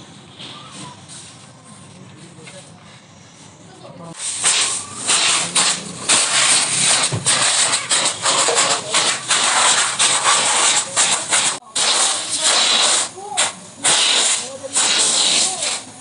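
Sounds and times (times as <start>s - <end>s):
pressurised gas hissing: 4.2s - 16.0s.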